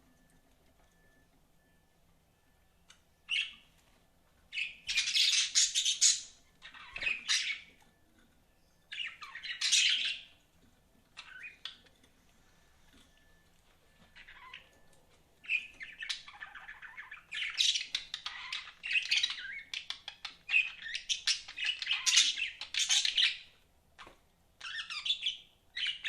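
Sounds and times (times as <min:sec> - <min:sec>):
budgerigars chirping: 0:04.5 - 0:07.8, 0:08.9 - 0:10.4, 0:15.4 - 0:23.5, 0:24.6 - 0:26.0.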